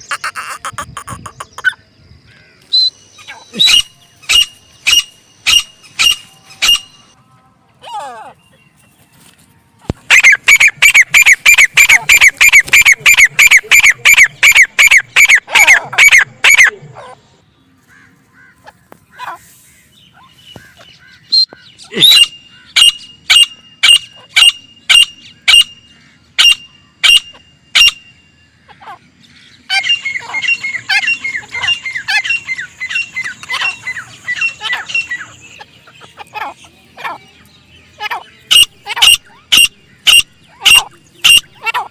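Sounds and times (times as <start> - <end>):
bird shrill repeated calls: 0.0 - 1.8, 2.6 - 7.2, 9.9 - 17.2, 17.9 - 41.9
bird sharp high notes: 3.6 - 7.2.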